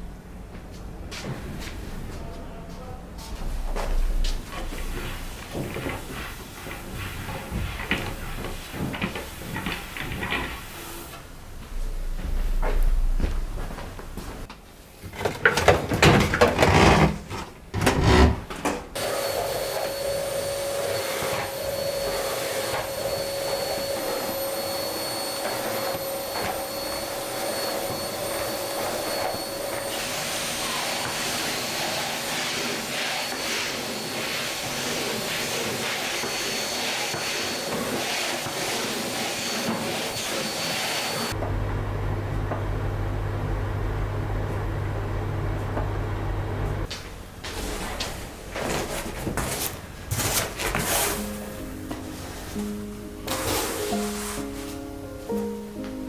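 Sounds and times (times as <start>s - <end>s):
vacuum cleaner whining: 15.2s - 46.9s, 48.6s - 56.0s.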